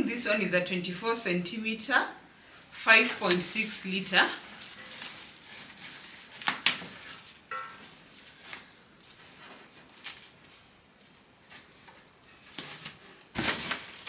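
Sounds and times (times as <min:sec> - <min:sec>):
metal pot and lid clinking: 0:07.5 - 0:07.8.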